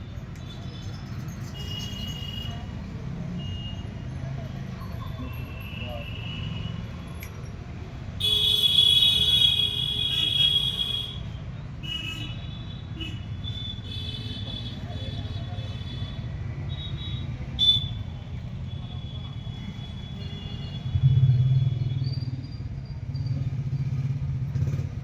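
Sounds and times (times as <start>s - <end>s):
street traffic rumbling: 0.0s - 25.0s
shrill vehicle horn blaring: 8.2s - 11.3s.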